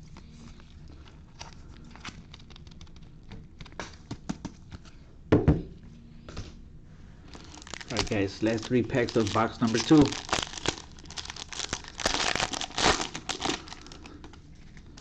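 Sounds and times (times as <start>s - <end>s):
trading cards flipped and clicking: 1.3s - 4.9s.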